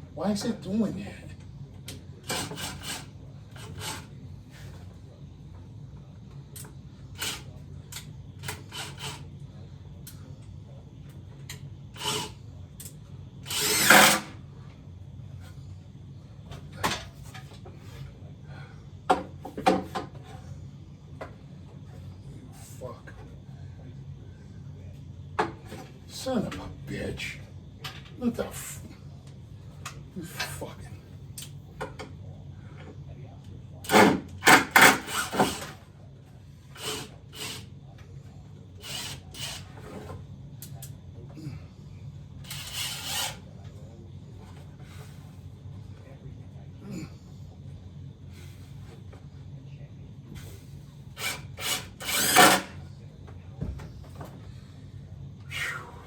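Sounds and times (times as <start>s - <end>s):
power drill running: 13.5s - 14.3s, 33.9s - 35.7s, 36.8s - 37.6s, 38.8s - 39.6s, 42.5s - 43.4s, 51.2s - 52.7s.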